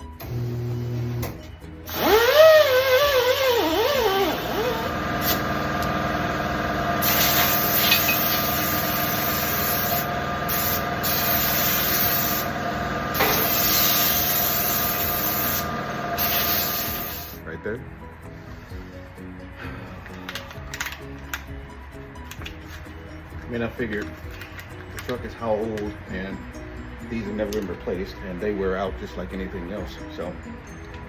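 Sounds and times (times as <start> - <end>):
power tool scrubbing metal rim: 1.9 - 17.4.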